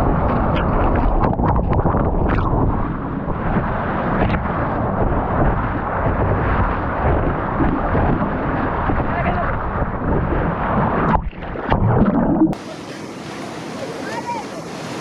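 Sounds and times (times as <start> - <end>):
surf and rushing water roar: 0.0 - 15.0.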